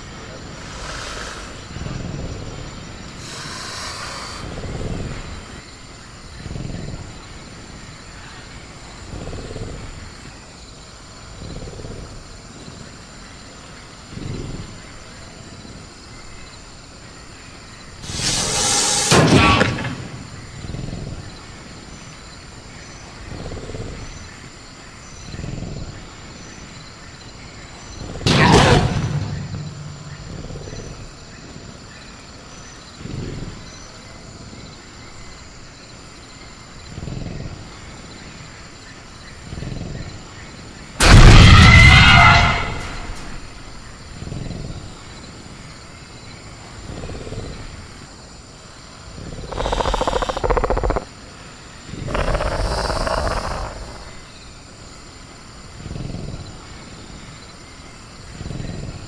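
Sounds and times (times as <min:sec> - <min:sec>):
crickets chirping: 0:00.0 - 0:59.0
loud growling outburst: 0:18.0 - 0:20.6, 0:28.3 - 0:30.7, 0:41.0 - 0:43.4, 0:49.4 - 0:51.1, 0:51.9 - 0:54.3
creature growling and breathing: 0:49.2 - 0:51.1, 0:51.8 - 0:54.3.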